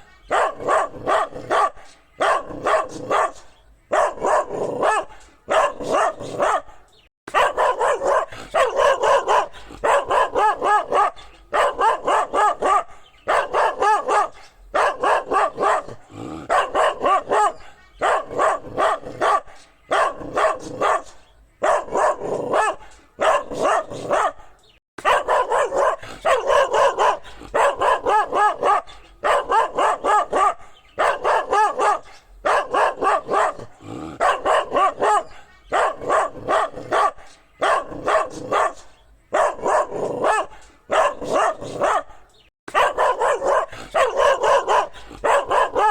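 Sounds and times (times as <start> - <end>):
dog barking: 0.0 - 45.9.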